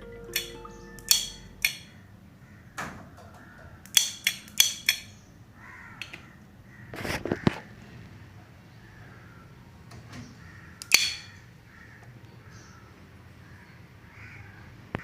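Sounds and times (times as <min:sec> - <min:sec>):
sharp clicks and knocks: 0:02.8 - 0:05.1.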